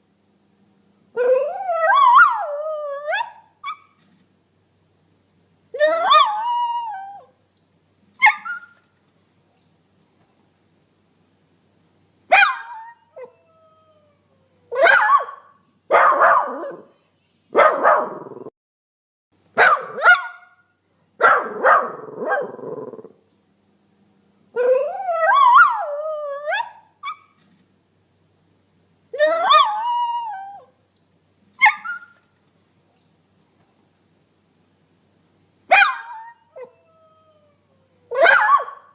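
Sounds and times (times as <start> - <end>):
puppies whining howls: 5.8 - 7.3, 12.4 - 15.2, 29.2 - 30.7, 31.6 - 32.8, 33.4 - 33.8, 35.8 - 38.8.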